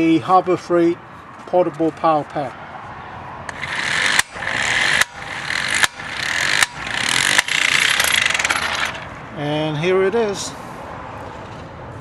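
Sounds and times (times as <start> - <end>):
impact wrench motor whir: 3.5 - 9.2
impact wrench sharp blows: 3.5 - 9.2.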